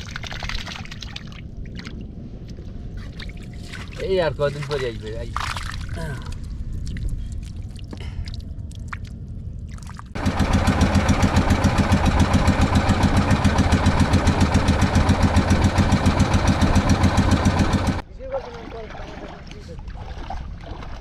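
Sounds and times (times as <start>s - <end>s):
low rumble: 5.2s - 18.0s
boat engine throbbing: 10.2s - 18.0s.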